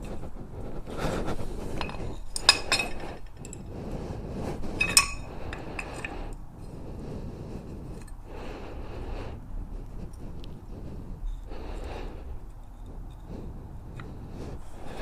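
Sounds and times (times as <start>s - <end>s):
handling and rustling noise: 0.0s - 6.4s
metal parts and tools clinking: 1.8s - 3.7s, 4.7s - 6.4s.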